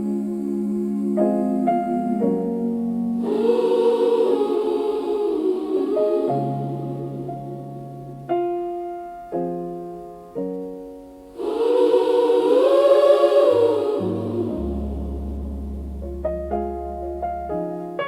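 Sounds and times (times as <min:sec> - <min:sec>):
choir holding a chord: 0:00.0 - 0:08.3, 0:11.3 - 0:16.5
piano chords ringing: 0:00.0 - 0:18.0
low bass notes: 0:14.0 - 0:17.6.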